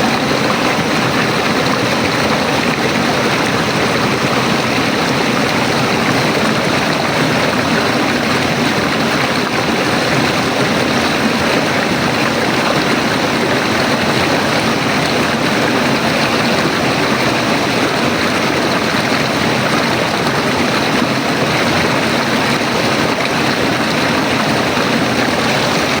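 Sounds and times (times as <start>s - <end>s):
river water rushing: 0.0s - 26.0s.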